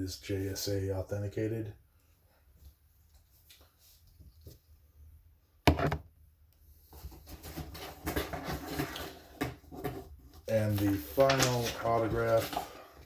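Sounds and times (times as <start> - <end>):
packaging rustling and crinkling: 7.1 - 13.0.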